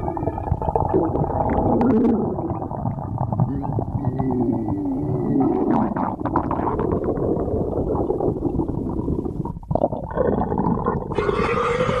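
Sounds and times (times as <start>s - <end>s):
stomach growling and gurgling: 0.0s - 12.0s.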